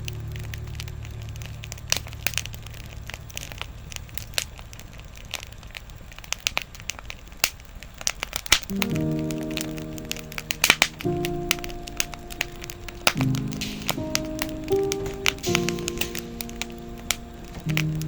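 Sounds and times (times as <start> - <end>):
campfire crackling and popping: 0.0 - 18.0
background music: 8.7 - 18.0.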